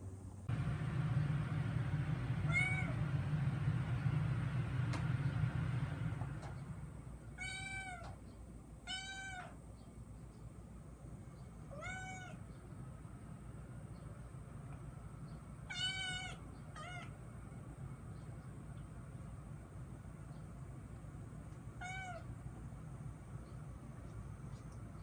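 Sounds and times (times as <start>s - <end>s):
steady low hum: 0.0s - 25.0s
kitten meowing: 8.9s - 9.6s, 11.7s - 12.4s, 15.7s - 17.1s, 21.8s - 22.3s.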